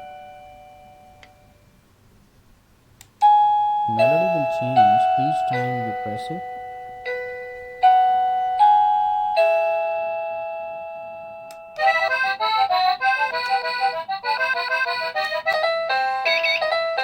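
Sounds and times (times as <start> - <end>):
electronic doorbell chime notes: 0.0 - 1.6, 3.2 - 12.1.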